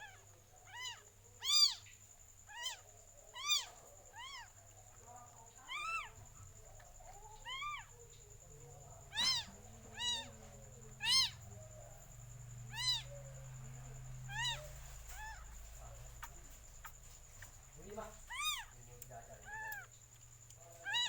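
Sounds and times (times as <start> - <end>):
cat mewing: 0.0 - 1.9, 2.5 - 4.6, 5.6 - 6.3, 7.2 - 7.9, 9.1 - 11.6, 12.7 - 13.3, 14.2 - 15.6, 18.2 - 18.8, 19.4 - 19.9, 20.8 - 21.0.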